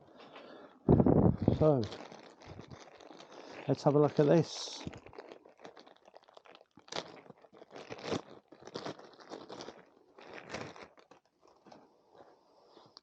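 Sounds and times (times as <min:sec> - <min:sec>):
packaging rustling and crackling: 0:00.1 - 0:13.0.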